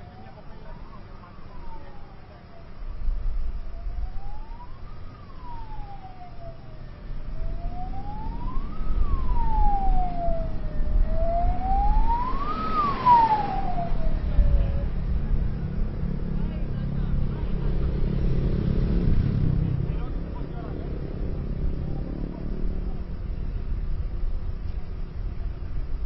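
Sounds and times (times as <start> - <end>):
emergency siren wailing: 0.0 - 18.3.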